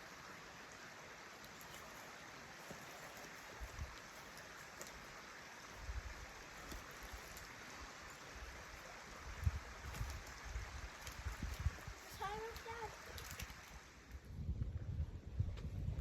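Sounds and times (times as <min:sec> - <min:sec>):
creek water flowing: 0:00.0 - 0:14.2.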